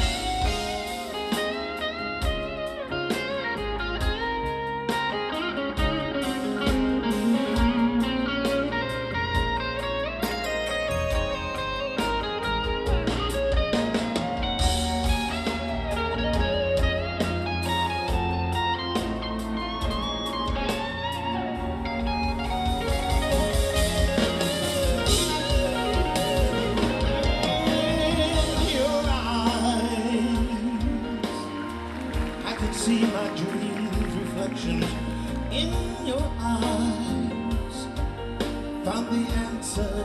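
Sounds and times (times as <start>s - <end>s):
band playing soul-jazz ballad: 0.0s - 40.0s
melodic guitar lead: 0.0s - 40.0s
person singing: 22.6s - 40.0s.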